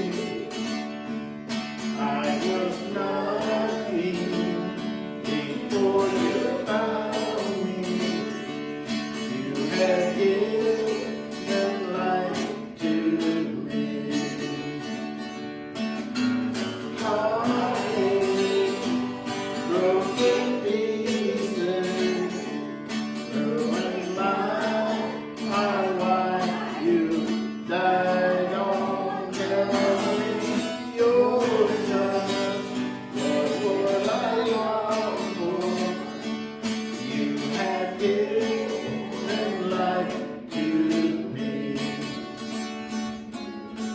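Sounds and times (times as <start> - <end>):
person singing: 0.0 - 0.9, 1.8 - 15.0, 16.6 - 42.5
strummed acoustic guitar: 0.0 - 43.9.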